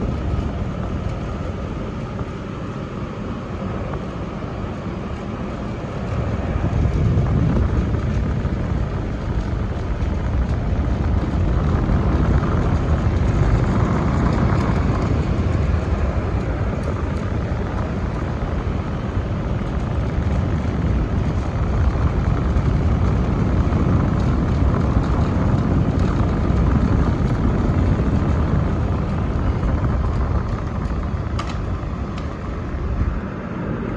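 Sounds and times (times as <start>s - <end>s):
air conditioner whirring: 0.0s - 33.9s.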